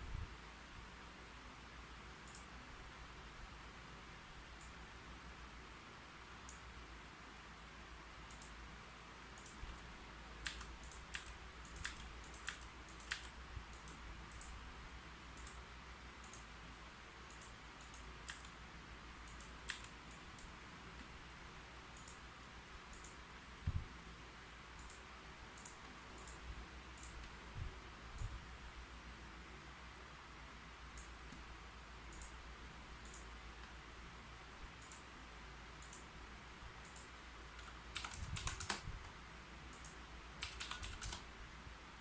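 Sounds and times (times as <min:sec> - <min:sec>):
keyboard key clicks: 0:10.4 - 0:14.6, 0:36.9 - 0:38.9, 0:39.7 - 0:41.2.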